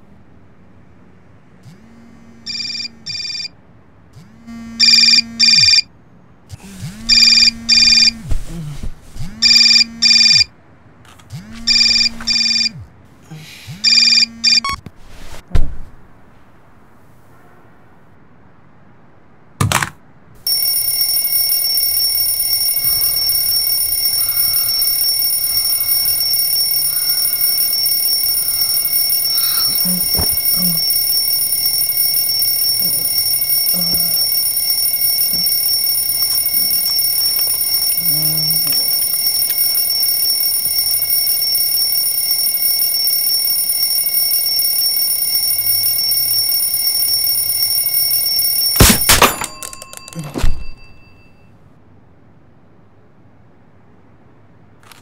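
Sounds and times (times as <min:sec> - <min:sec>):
alarm clock ringing: 0:02.5 - 0:03.5, 0:04.8 - 0:05.8, 0:07.1 - 0:08.2, 0:09.4 - 0:10.5, 0:11.7 - 0:12.8, 0:20.4 - 0:51.5.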